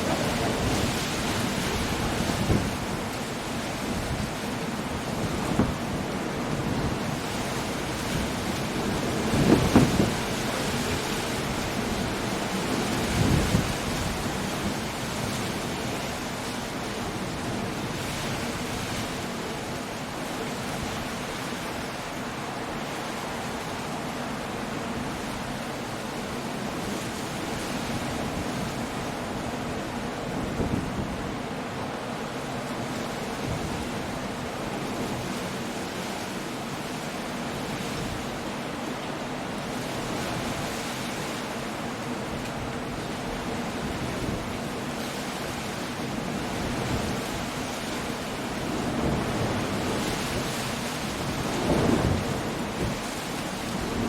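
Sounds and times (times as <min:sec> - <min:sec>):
surf breaking on rocks: 0:00.0 - 0:16.8
steady wind: 0:00.0 - 0:54.0.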